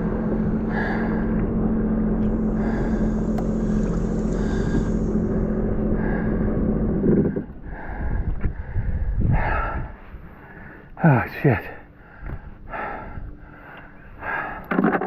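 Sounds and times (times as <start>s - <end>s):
jet ski engine running: 0.0s - 8.7s
wind on microphone: 2.3s - 10.3s.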